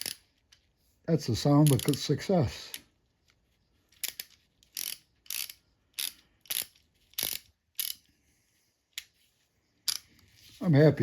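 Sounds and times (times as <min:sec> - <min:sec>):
hand ratchet clicking: 0:01.6 - 0:02.1, 0:04.0 - 0:08.1.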